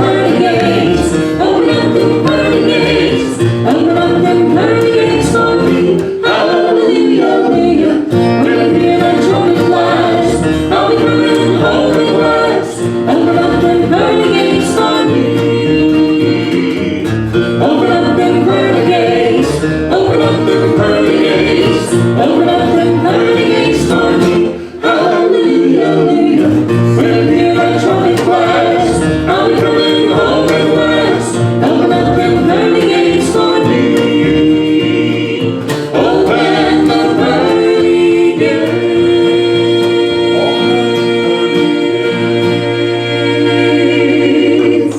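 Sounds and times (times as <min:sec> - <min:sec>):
acoustic string band: 0:00.0 - 0:44.9
group singing in harmony: 0:00.0 - 0:44.9.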